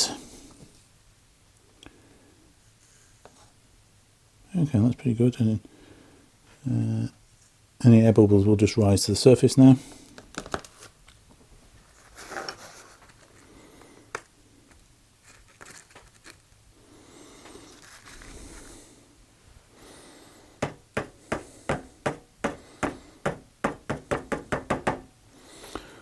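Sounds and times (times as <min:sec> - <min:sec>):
handling clicks and rustle: 0:14.1 - 0:16.6.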